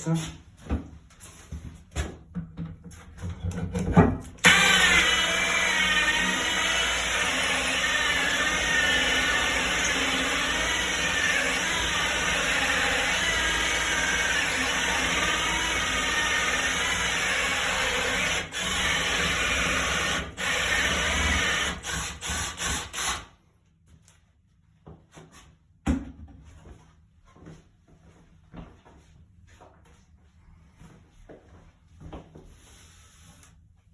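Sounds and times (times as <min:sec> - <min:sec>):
drill cutting through wood: 0:04.4 - 0:23.4.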